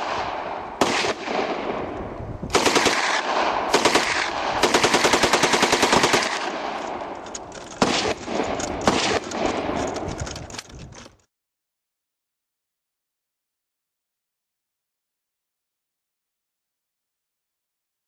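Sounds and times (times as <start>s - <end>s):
single loud gunshots: 0.0s - 1.9s
machine-gun bursts: 2.5s - 6.9s, 7.7s - 10.3s.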